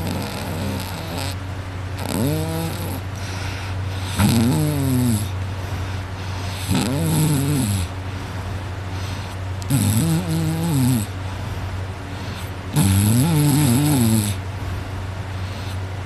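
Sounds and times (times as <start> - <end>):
man snoring loudly: 0.0 - 1.4, 2.0 - 3.3, 4.0 - 5.3, 6.4 - 8.0, 9.6 - 11.1, 12.4 - 14.4
steady low hum: 0.0 - 16.0.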